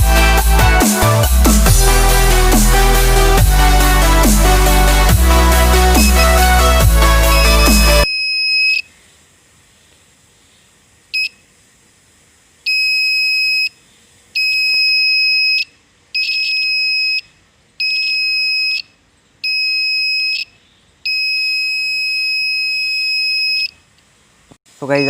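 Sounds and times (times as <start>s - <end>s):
alarm buzzer high-pitched tone: 0.0s - 8.8s.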